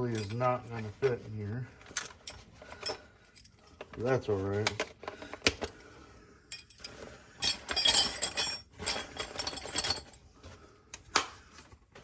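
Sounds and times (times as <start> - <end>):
metal allen wrenches clinking: 0.0 - 0.6, 6.5 - 10.2.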